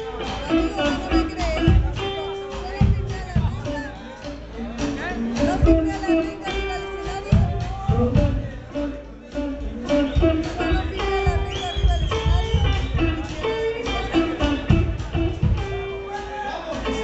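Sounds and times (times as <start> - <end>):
blues band playing: 0.0 - 17.0
guitar notes bending: 0.0 - 17.0.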